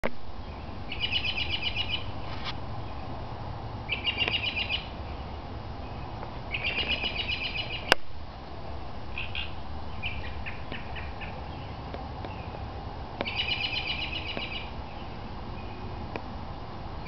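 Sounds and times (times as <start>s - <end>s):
songbird chirping: 0.4s - 3.1s, 3.9s - 8.0s, 9.1s - 16.3s.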